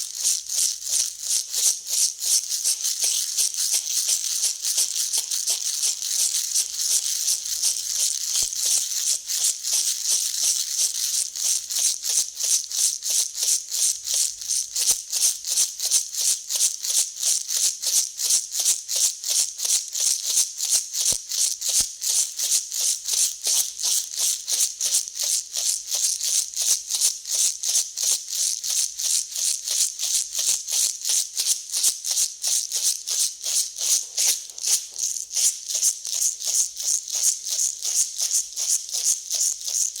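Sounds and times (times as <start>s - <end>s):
dry grains swishing and rattling: 0.0s - 10.3s, 33.8s - 40.0s.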